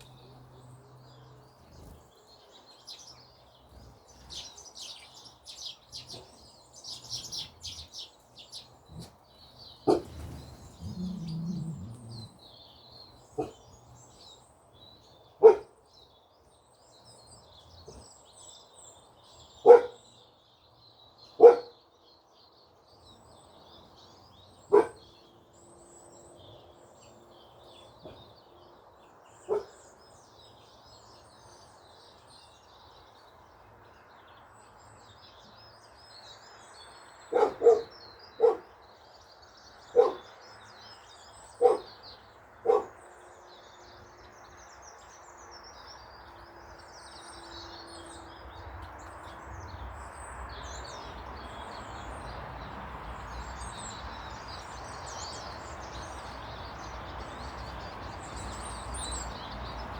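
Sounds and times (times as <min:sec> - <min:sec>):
small birds chirping: 0:00.0 - 0:59.9
dog barking: 0:09.8 - 0:10.2, 0:13.4 - 0:13.6, 0:15.4 - 0:15.8, 0:19.6 - 0:20.0, 0:21.4 - 0:21.8, 0:24.7 - 0:25.1, 0:29.5 - 0:29.8, 0:37.3 - 0:38.7, 0:39.9 - 0:40.3, 0:41.6 - 0:41.9, 0:42.6 - 0:43.0.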